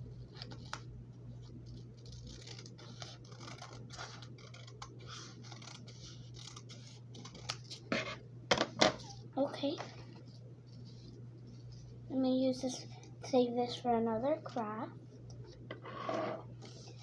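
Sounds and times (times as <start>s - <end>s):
scissors cutting paper: 1.7s - 8.1s.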